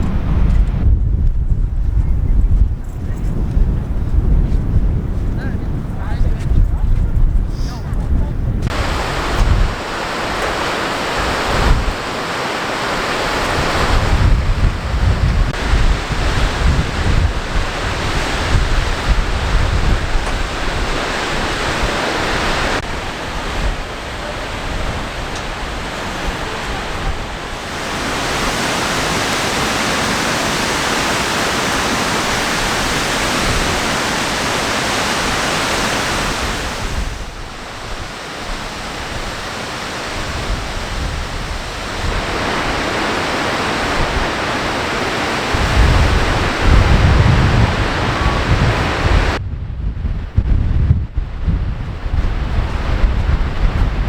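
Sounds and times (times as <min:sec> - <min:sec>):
wind buffeting microphone: 0:00.0 - 0:54.0
waterfall rushing: 0:08.6 - 0:49.4.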